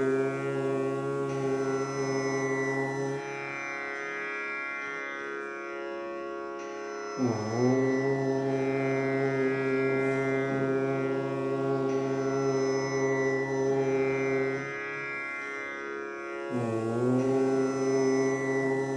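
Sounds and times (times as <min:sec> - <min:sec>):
person chanting om: 0:00.0 - 0:03.6, 0:07.2 - 0:15.7, 0:16.4 - 0:18.9
droning music: 0:00.0 - 0:18.9.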